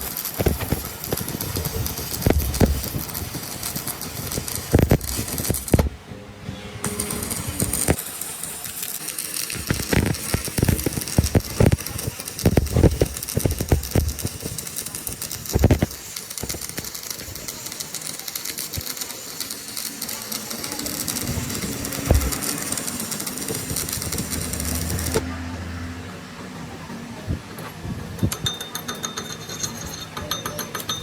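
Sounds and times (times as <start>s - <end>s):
hissing machine noise: 0.0s - 31.0s
knocks and clinks on metal: 28.1s - 31.0s.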